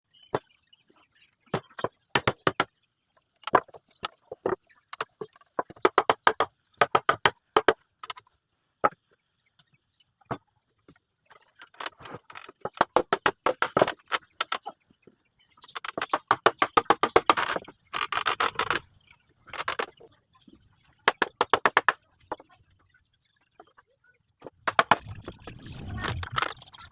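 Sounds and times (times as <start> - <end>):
sharp knocks on wood: 1.5 - 2.7, 3.5 - 7.8, 21.1 - 22.4.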